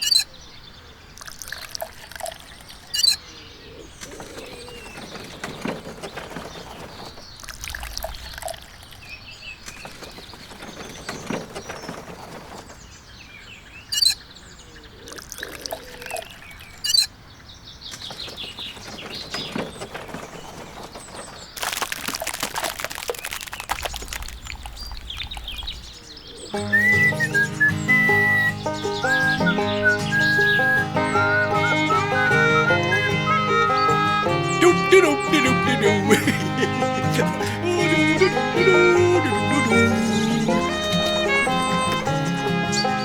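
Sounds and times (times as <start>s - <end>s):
loud bird chirps: 0.0s - 0.9s, 2.2s - 12.0s, 22.9s - 43.0s
birds chirping: 0.0s - 43.0s
water pouring and splashing: 1.2s - 3.0s, 6.6s - 10.9s, 15.1s - 16.8s, 20.7s - 26.1s.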